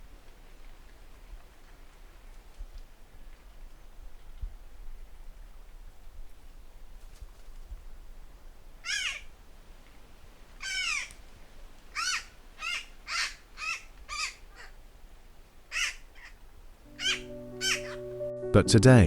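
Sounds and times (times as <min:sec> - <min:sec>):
crow cawing harshly: 0:08.8 - 0:09.3, 0:10.6 - 0:11.1, 0:11.9 - 0:14.8, 0:15.7 - 0:16.4, 0:17.0 - 0:18.0.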